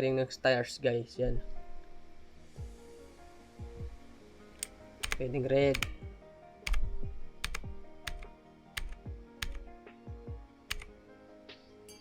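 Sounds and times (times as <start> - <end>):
background music: 0.0 - 12.0
mechanical keyboard clicks: 4.6 - 6.0, 6.7 - 9.7, 10.7 - 11.0.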